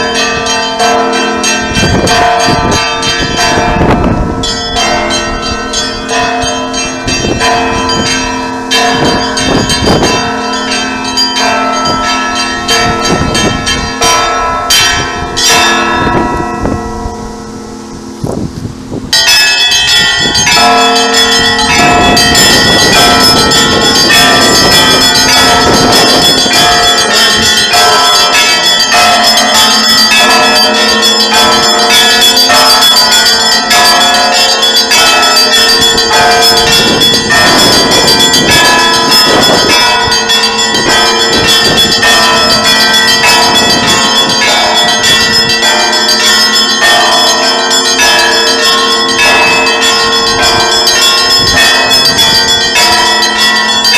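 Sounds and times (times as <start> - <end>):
church bells pealing: 0.0 - 53.9.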